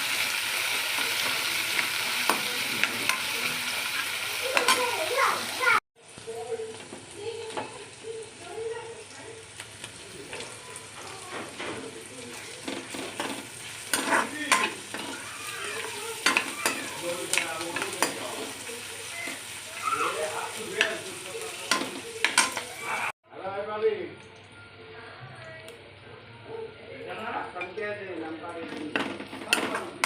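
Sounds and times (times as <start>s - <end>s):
food sizzling in a pan: 0.0s - 23.2s, 23.8s - 30.0s
spatula scraping pan: 10.8s - 23.0s.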